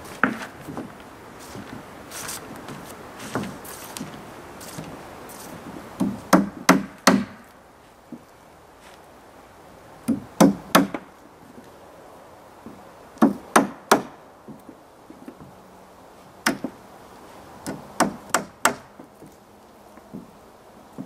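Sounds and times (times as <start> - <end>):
hammer striking wood: 6.0 - 7.4, 10.1 - 11.1, 13.2 - 14.2, 16.4 - 16.8, 17.7 - 19.3.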